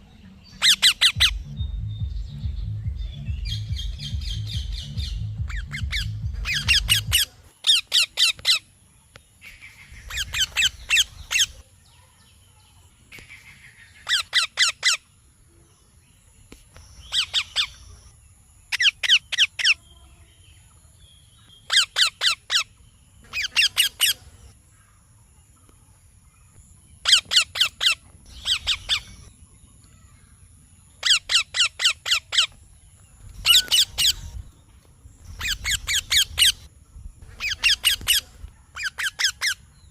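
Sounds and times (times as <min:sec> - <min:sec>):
parakeet chirping: 0:00.6 - 0:01.5, 0:03.4 - 0:08.6, 0:10.0 - 0:11.6, 0:23.3 - 0:24.5, 0:27.0 - 0:29.3, 0:33.4 - 0:34.5, 0:35.2 - 0:39.6.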